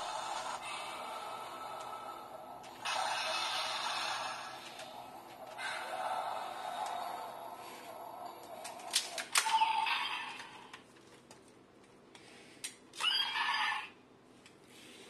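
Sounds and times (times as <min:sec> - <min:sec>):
toy electronic sound effects: 0:13.0 - 0:14.0.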